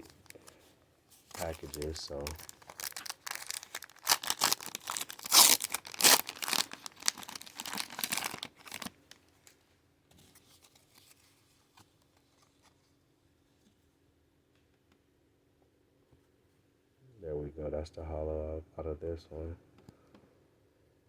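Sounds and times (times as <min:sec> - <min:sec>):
foil wrapper tearing and crinkling: 0:01.2 - 0:09.2.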